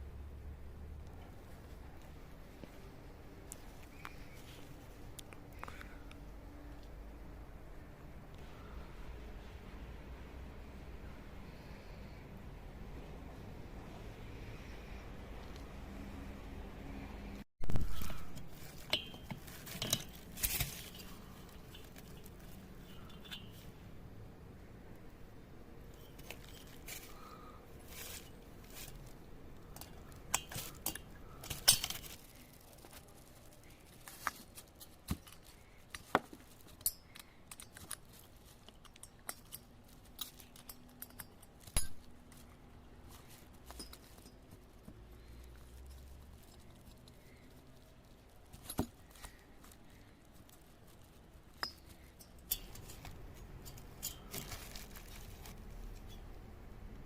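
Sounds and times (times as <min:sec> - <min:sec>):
hard objects clinking: 0:17.7 - 0:23.7, 0:26.0 - 0:56.3.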